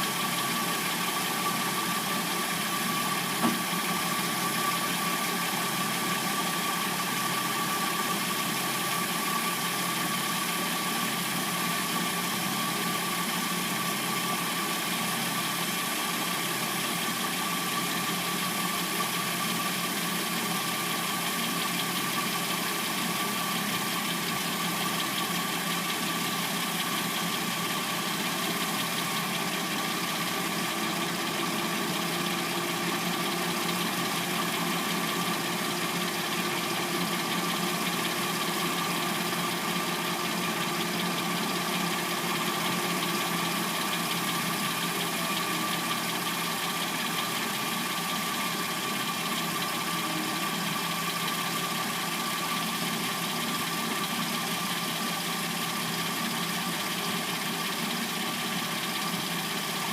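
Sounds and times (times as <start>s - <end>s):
car engine idling with clacking: 0.0s - 59.9s.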